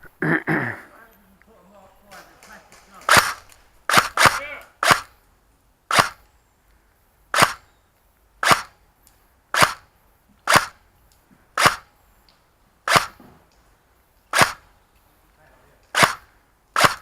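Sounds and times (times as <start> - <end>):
airsoft gun shots: 2.1 - 5.2, 5.9 - 6.2, 7.3 - 7.6, 8.4 - 8.8, 9.5 - 9.9, 10.5 - 10.8, 11.6 - 11.9, 12.9 - 13.2, 14.3 - 14.6, 15.9 - 17.0.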